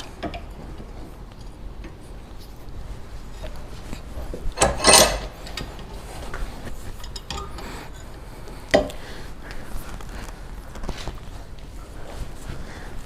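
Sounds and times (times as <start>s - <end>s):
iron clanking and scraping in vise: 4.6s - 6.2s.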